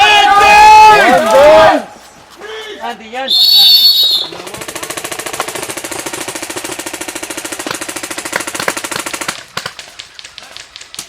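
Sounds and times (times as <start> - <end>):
airsoft rifle full-auto burst: 3.6 - 9.7
scattered clicks: 4.5 - 11.0.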